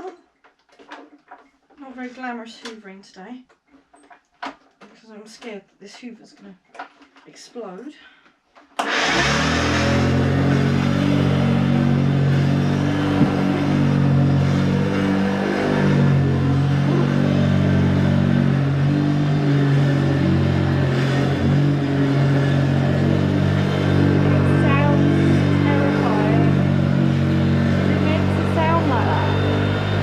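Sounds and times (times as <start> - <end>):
vacuum cleaner motor running: 8.8 - 30.0.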